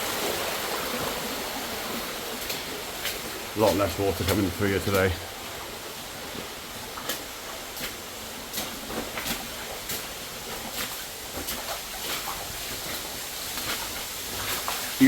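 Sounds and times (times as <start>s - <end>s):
underground waterfall hissing: 0.0s - 15.0s
sharp clicks or splashes: 2.4s - 5.6s, 6.3s - 15.0s.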